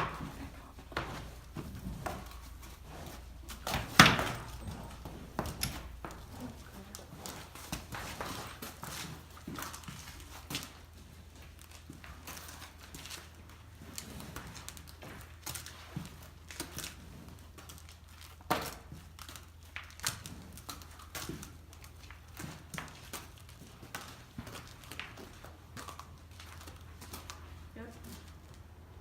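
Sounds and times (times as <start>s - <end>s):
rustling: 0.0s - 28.7s.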